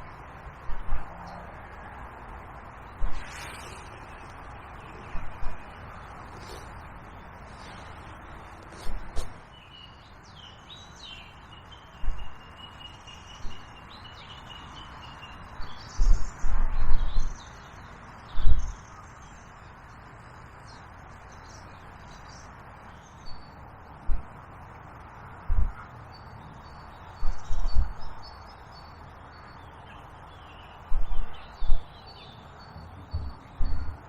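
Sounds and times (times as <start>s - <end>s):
small birds chirping: 0.0s - 34.0s
steady outdoor hiss: 0.0s - 34.0s
low thumps: 25.5s - 25.8s.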